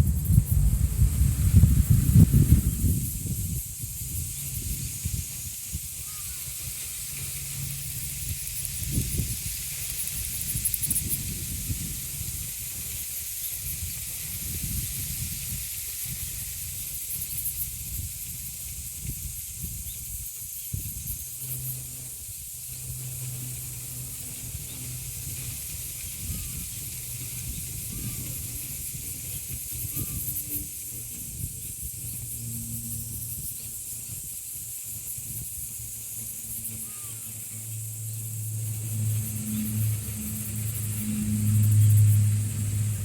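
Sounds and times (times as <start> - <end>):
wind buffeting microphone: 0.0 - 6.8, 8.1 - 21.2, 24.2 - 36.3
cicadas droning: 0.0 - 43.0
wind rustling leaves: 0.0 - 43.0
low steady hum: 35.5 - 43.0.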